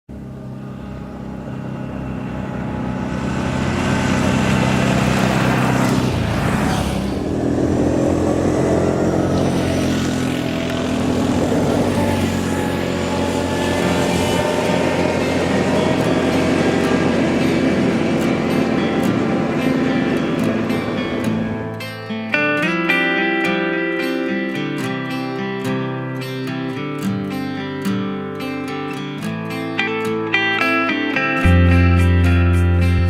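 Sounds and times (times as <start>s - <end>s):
atv engines running: 0.1s - 21.9s.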